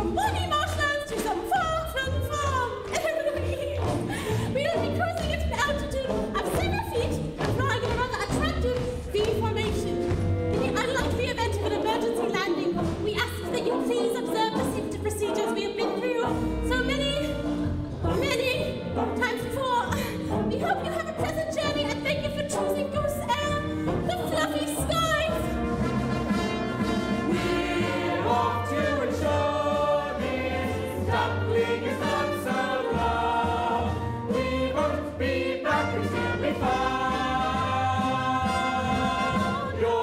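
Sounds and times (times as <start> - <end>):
instrumental accompaniment: 0.0 - 40.0
chorus singing: 26.3 - 40.0.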